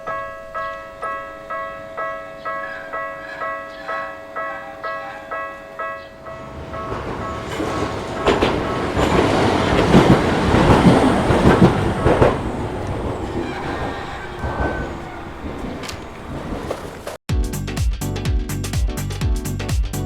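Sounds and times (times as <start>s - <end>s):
crossing warning bell: 0.0s - 16.8s
train wheels clacking: 6.0s - 17.2s.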